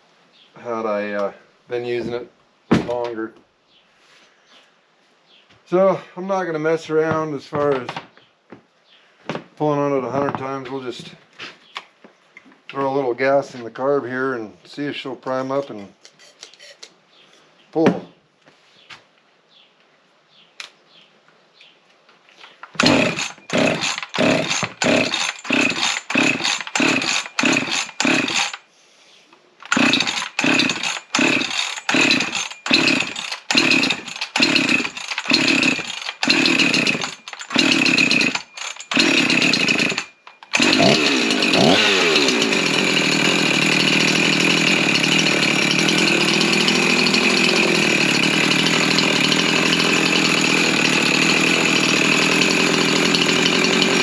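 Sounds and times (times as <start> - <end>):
chainsaw running: 22.6 - 28.6, 29.6 - 54.0
recoil starter pulls: 22.6 - 28.6, 29.6 - 54.0.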